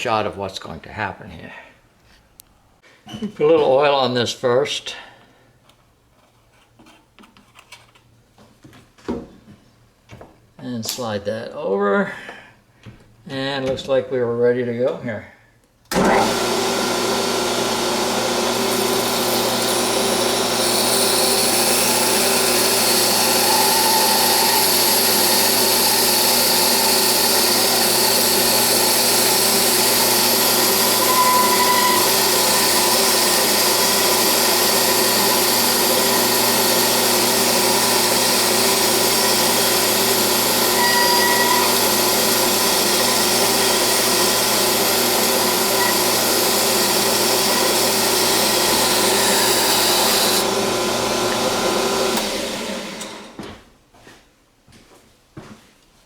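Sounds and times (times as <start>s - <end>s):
metal lathe running: 16.0s - 53.3s.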